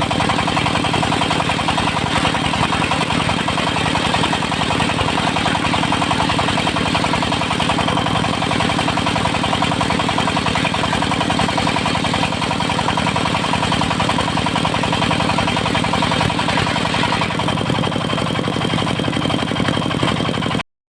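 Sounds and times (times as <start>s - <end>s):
diesel engine running: 0.0s - 20.6s.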